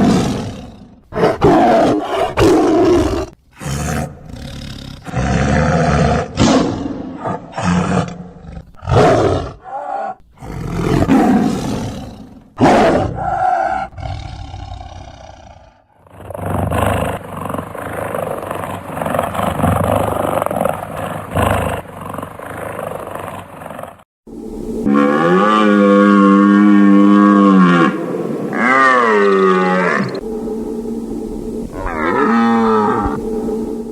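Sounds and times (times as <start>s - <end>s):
big cats roaring: 0.0s - 24.0s, 24.8s - 33.9s
steady high hiss: 24.3s - 33.9s.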